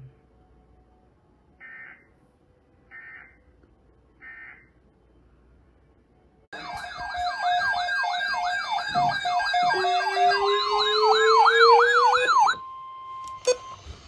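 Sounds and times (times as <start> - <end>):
slowly rising lower tone: 6.6 - 12.6
electronic wailing siren: 6.6 - 13.6.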